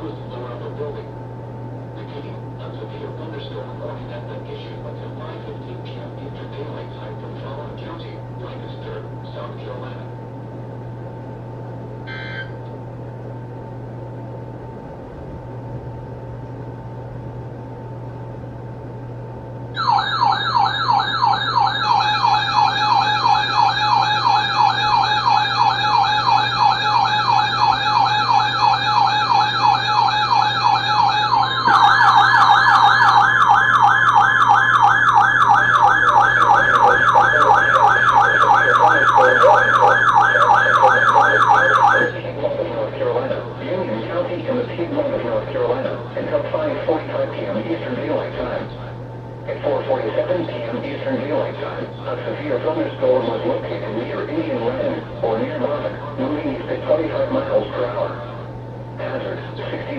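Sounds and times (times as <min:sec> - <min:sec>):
faint hiss and hum: 0:00.0 - 0:19.8, 0:41.6 - 0:59.9
electronic warbling alert alarm: 0:12.0 - 0:12.6, 0:19.8 - 0:42.2.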